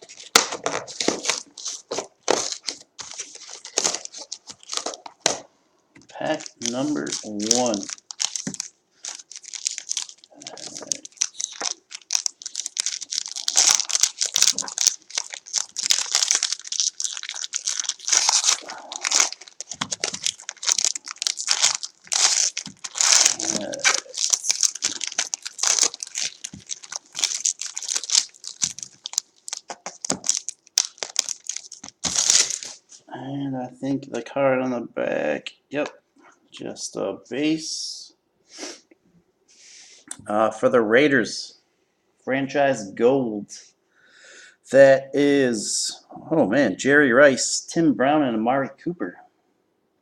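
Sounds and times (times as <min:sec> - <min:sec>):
plastic wrapper tearing and crinkling: 0:00.0 - 0:05.4, 0:06.2 - 0:32.8.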